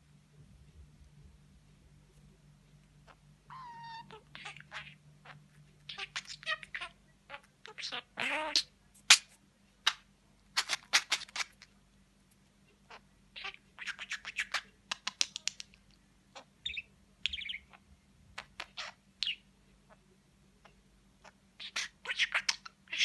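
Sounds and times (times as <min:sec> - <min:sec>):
budgerigar chirping and chattering: 0:03.0 - 0:11.6, 0:12.9 - 0:15.6, 0:16.4 - 0:17.8, 0:18.4 - 0:20.0, 0:21.2 - 0:23.0.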